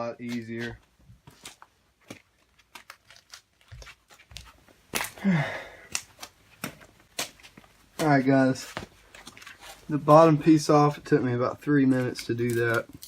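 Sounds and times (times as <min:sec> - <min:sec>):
breathy sigh or grunt: 0:05.1 - 0:06.0.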